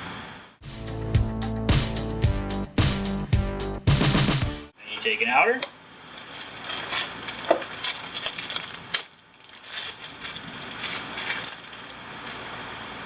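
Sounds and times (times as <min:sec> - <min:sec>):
metal parts clicking and scraping: 0:06.2 - 0:12.4.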